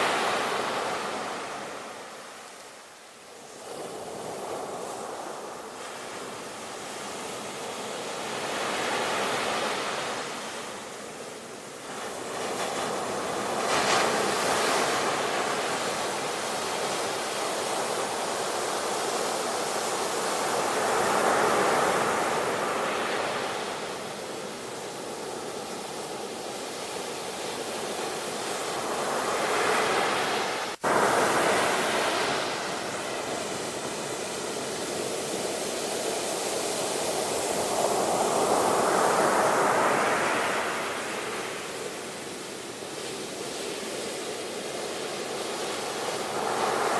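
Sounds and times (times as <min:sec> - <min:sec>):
ocean waves breaking on shore: 0:00.0 - 0:46.9.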